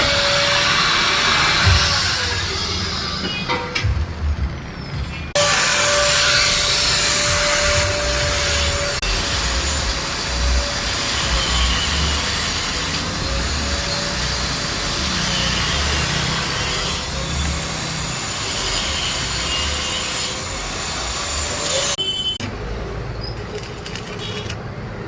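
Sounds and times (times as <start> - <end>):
angle grinder grinding steel: 5.4 - 22.0.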